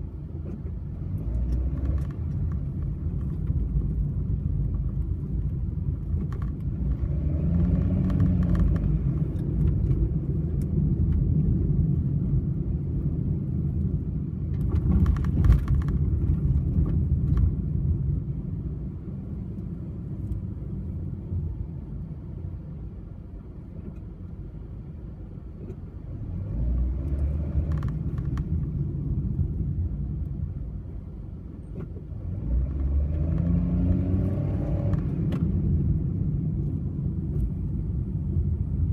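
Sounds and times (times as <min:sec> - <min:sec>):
car engine and road rumble: 0:00.0 - 0:38.9.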